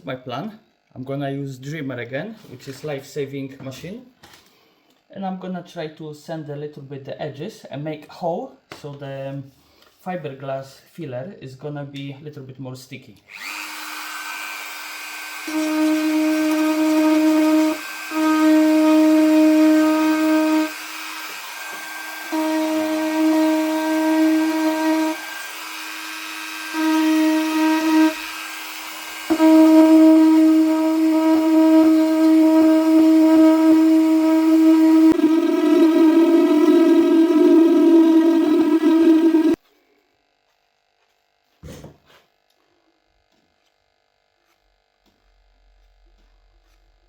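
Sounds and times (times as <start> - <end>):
rotary tool high-pitched hum: 13.3 - 39.6.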